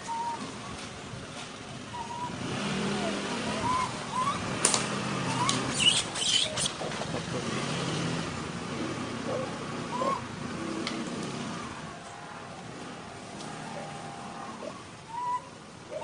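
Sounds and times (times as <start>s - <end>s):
baby monkey crying: 3.6s - 4.4s, 5.3s - 6.7s.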